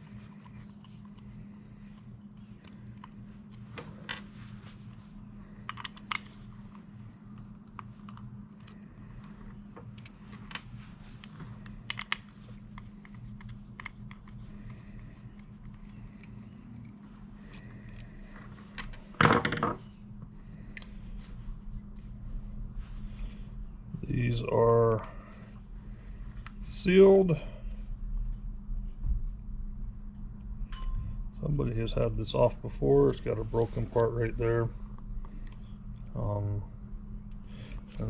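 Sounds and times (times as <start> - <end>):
steady low hum: 0.0 - 38.0
small parts clicking and tapping: 5.6 - 19.8.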